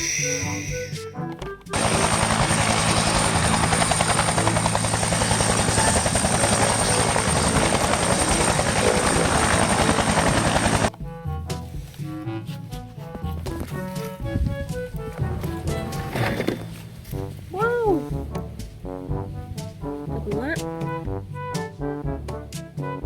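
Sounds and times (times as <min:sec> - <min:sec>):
background music: 0:00.0 - 0:23.0
whirring pulsing mechanical noise: 0:01.7 - 0:10.9.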